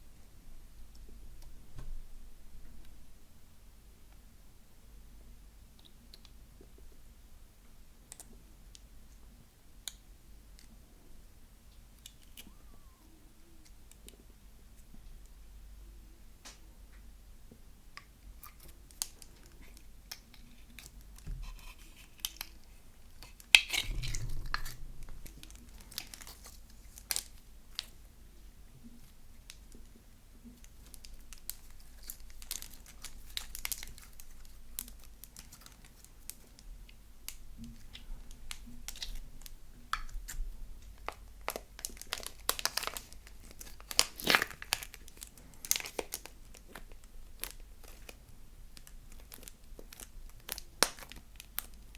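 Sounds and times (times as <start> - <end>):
slime crackling and popping: 18.4 - 27.9, 30.6 - 36.7, 37.3 - 51.9.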